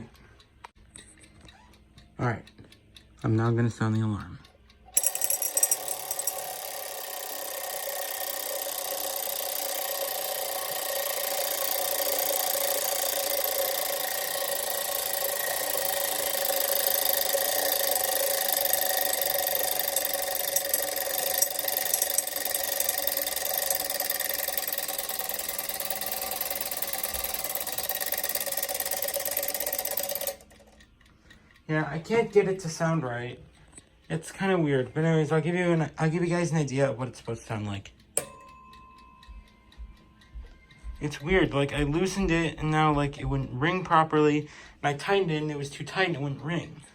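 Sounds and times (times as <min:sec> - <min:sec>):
alarm clock bell ringing: 0:05.0 - 0:30.6, 0:38.2 - 0:42.9.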